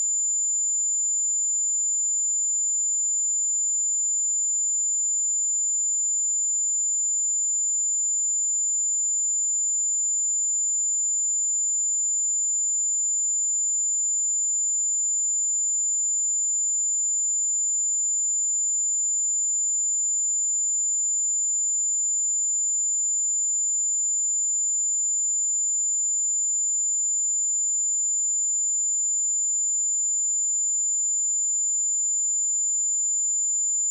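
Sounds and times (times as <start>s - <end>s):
high-pitched sine test tone: 17.7s - 33.9s.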